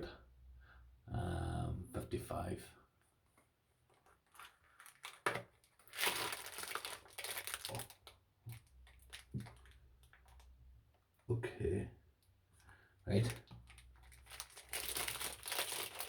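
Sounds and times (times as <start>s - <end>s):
packaging rustling: 3.9s - 10.5s, 13.2s - 16.0s.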